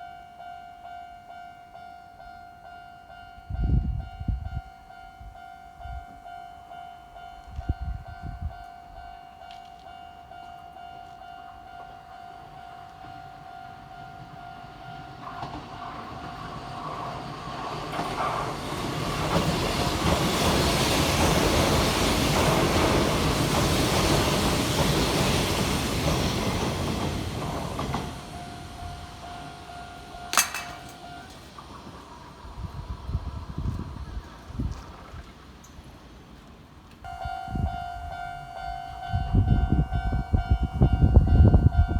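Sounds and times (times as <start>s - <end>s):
train wheels rushing on rails: 11.6s - 34.7s
level-crossing alarm ringing: 27.8s - 31.5s, 37.1s - 41.9s.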